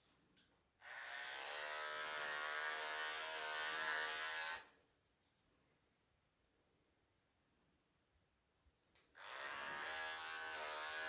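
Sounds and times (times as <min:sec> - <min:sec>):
electric pet clippers buzzing: 0:00.8 - 0:04.7, 0:09.2 - 0:11.0.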